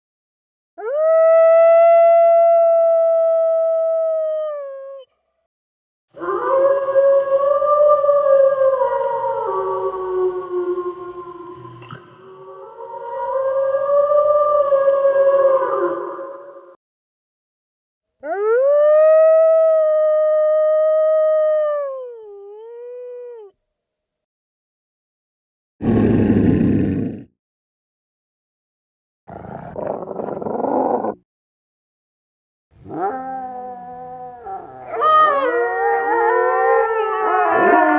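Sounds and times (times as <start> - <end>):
wolf howling: 6.2 - 16.7, 32.8 - 37.9
wolf growls: 25.8 - 27.3, 29.3 - 31.2.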